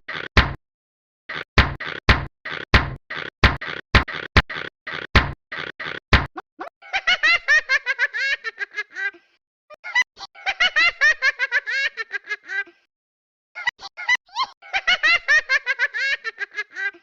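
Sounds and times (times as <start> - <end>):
baby giggling: 6.6 - 12.7, 13.6 - 17.0.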